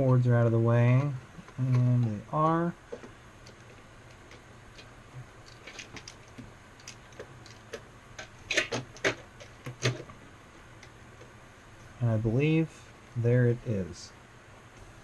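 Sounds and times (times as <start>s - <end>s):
computer parts clicking and tapping: 0.0s - 10.2s.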